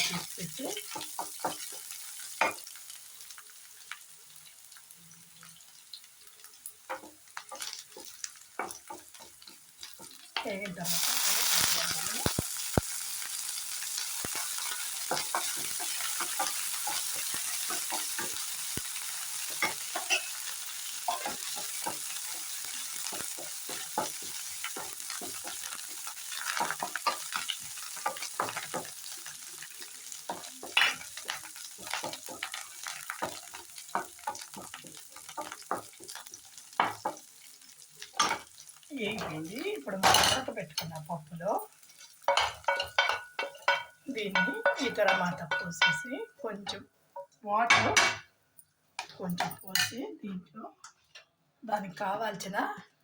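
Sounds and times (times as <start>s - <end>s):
spices sizzling in hot oil: 0.0s - 53.0s
spoon scraping pan: 6.9s - 38.5s, 41.8s - 48.3s.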